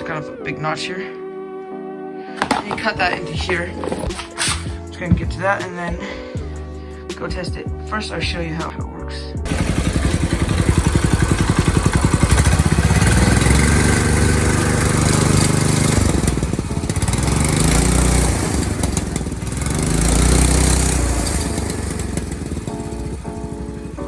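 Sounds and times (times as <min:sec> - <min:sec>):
small engine revving: 0:09.5 - 0:24.0.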